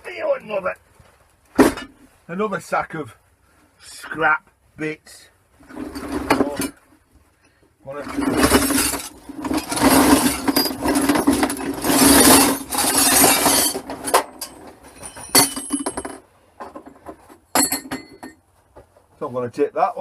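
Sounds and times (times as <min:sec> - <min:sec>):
scrap metal clattering: 0:05.6 - 0:06.8, 0:07.9 - 0:18.4.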